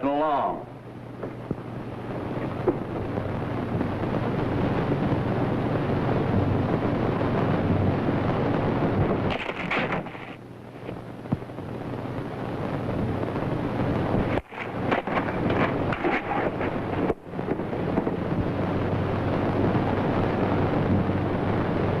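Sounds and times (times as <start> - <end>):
film soundtrack hiss and hum: 0.0 - 22.0.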